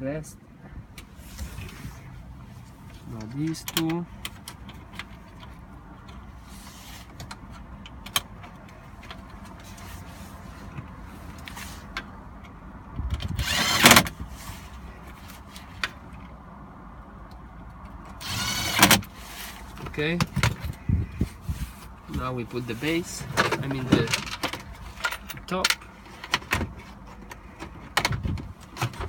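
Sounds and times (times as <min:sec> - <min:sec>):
small clicks and handling noises: 0:02.9 - 0:06.3
cordless drill whining: 0:13.4 - 0:14.1, 0:18.2 - 0:18.9.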